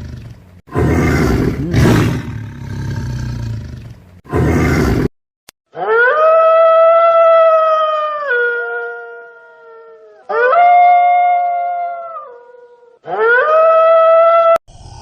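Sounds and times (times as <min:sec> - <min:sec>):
dog howling: 0:05.8 - 0:14.6.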